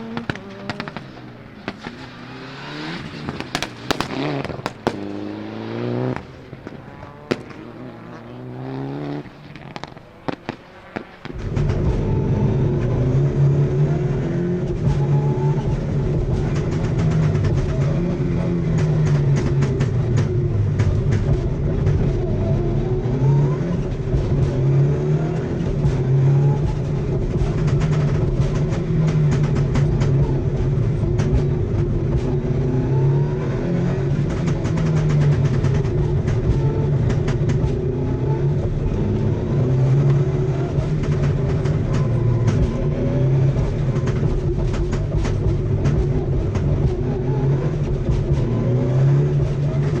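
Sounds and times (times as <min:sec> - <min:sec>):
car engine revving: 0:00.0 - 0:50.0
exhaust pops and bangs: 0:00.0 - 0:50.0.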